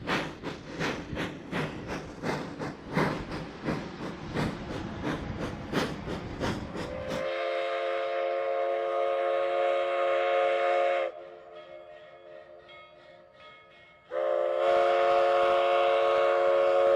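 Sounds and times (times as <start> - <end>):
steam locomotive chuffing: 0.0 - 13.4, 14.1 - 16.9
steam whistle blast: 6.9 - 11.4, 14.1 - 16.9.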